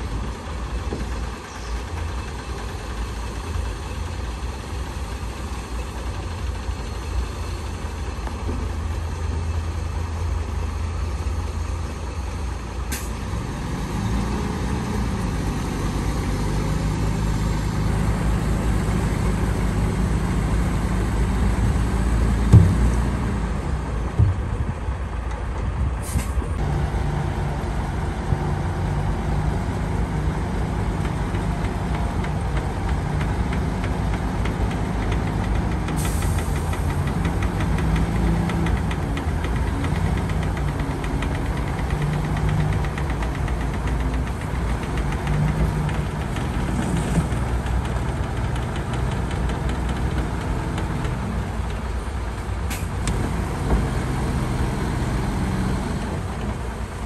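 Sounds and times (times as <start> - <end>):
heavy diesel engines rumbling: 0.0 - 57.0
sharp knocks: 22.4 - 23.1.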